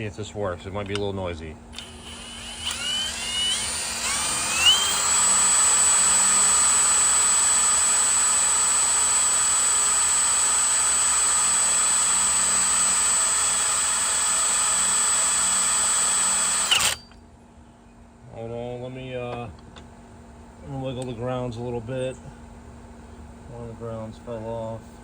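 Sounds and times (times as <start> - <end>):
electric drill whining: 1.7 - 17.2.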